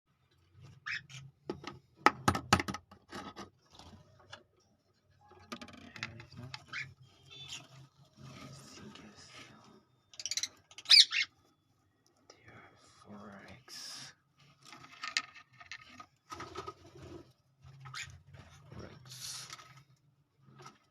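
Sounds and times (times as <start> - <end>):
scraping and rustling: 3.1 - 10.7, 14.3 - 20.9
lovebird chirp: 6.7 - 7.8, 10.2 - 11.4.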